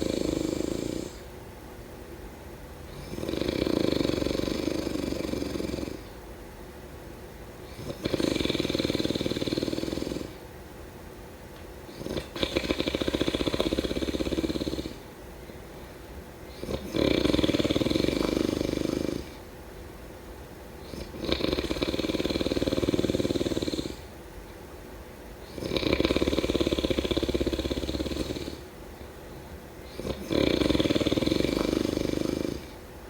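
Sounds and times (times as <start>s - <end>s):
person snoring: 0.0s - 1.2s, 2.9s - 6.1s, 7.7s - 10.4s, 11.9s - 15.0s, 16.5s - 19.4s, 20.8s - 24.1s, 25.5s - 28.6s, 29.9s - 32.8s
quiet breathing: 0.0s - 1.3s, 11.8s - 19.5s.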